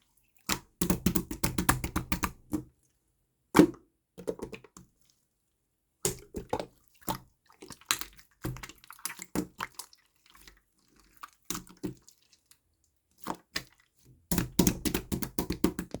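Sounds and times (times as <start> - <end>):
slime squishing with wet clicks: 0.4 - 2.7, 6.0 - 16.0.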